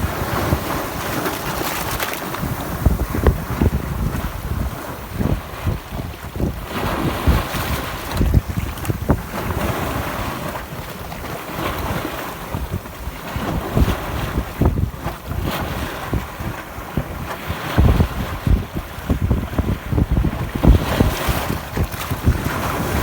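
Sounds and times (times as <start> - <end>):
sea waves washing: 0.0 - 14.6, 15.5 - 23.0
wind buffeting microphone: 0.0 - 23.0.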